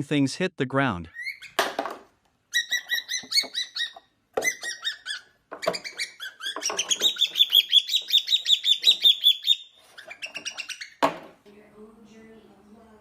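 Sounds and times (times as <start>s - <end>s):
pet bird chirping: 1.1s - 1.6s, 2.5s - 11.0s.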